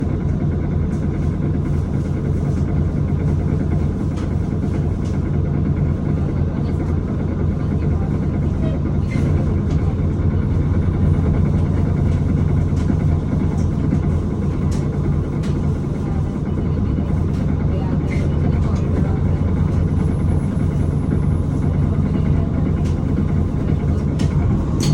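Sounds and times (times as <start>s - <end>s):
bus engine drone: 0.0s - 24.9s.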